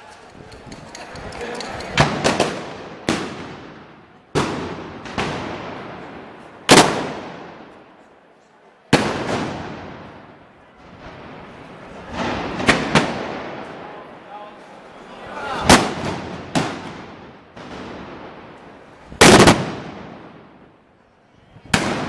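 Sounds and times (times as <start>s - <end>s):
gunpowder blasts with echo: 2.0s - 7.9s, 8.9s - 14.2s, 15.6s - 20.7s, 21.7s - 22.0s.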